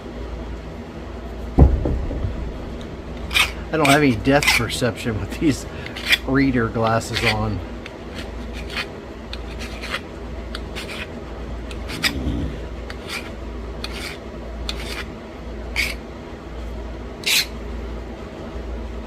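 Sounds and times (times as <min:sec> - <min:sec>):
stone flaking scratchy clicks: 0:08.1 - 0:10.0.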